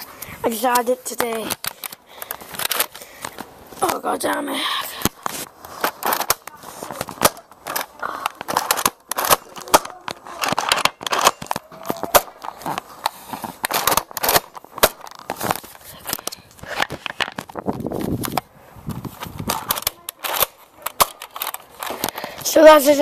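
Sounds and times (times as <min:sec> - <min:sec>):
dart blaster plastic clacks: 0:05.0 - 0:18.5, 0:19.2 - 0:22.4.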